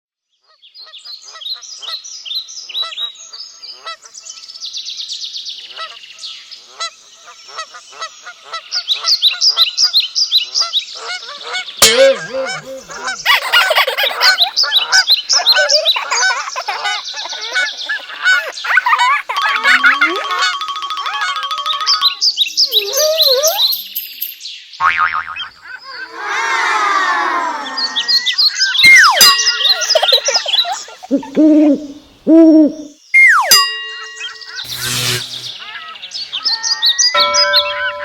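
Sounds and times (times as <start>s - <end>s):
lower repeated bird calls: 10.4s - 24.3s, 25.4s - 38.0s
birds chirping: 10.8s - 38.0s.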